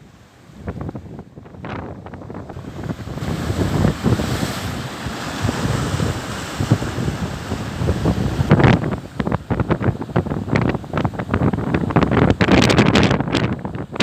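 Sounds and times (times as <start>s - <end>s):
sea surf breaking: 0.0s - 14.0s
wind buffeting microphone: 0.0s - 14.0s.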